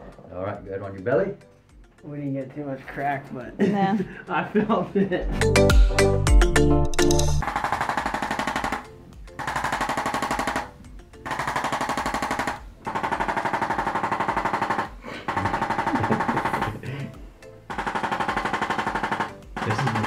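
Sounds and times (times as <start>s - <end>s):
rapid stuttering pulse in music: 11.3s - 16.9s, 17.7s - 20.0s.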